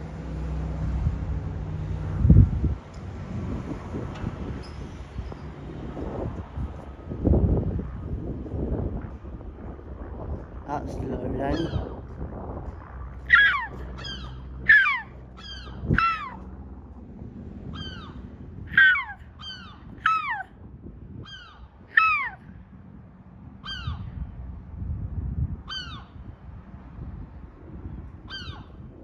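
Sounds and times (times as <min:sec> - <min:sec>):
bird harsh calls: 0:13.3 - 0:16.4, 0:17.8 - 0:20.5, 0:21.2 - 0:22.4.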